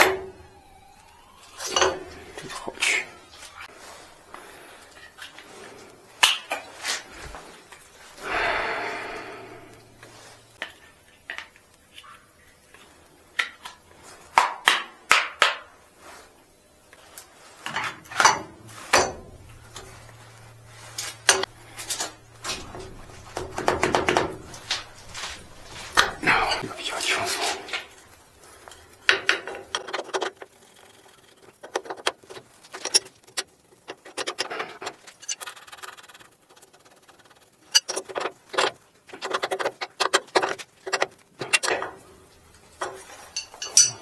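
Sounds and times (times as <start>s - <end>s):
metal scrape: 29.7s - 39.3s
metallic clinks of hand tools: 43.3s - 44.0s.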